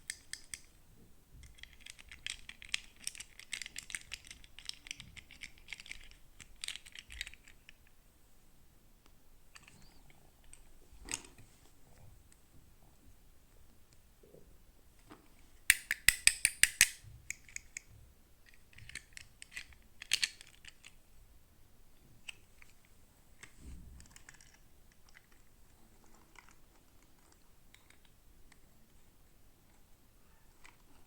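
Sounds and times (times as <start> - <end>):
sharp plastic clicks: 15.7 - 17.9.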